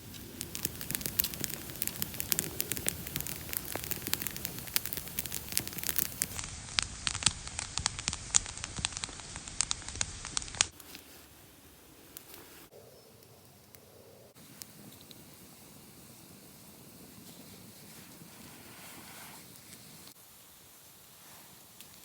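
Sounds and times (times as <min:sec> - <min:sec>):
wood fire crackling and popping: 0:00.0 - 0:11.2, 0:14.4 - 0:18.4.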